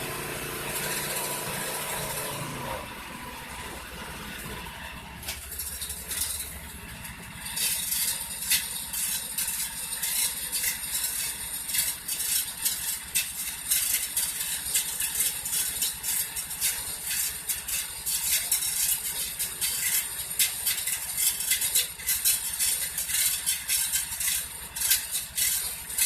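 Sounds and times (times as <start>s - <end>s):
small engine running: 0.0s - 26.0s
metal clinks and scrapes: 5.2s - 26.0s.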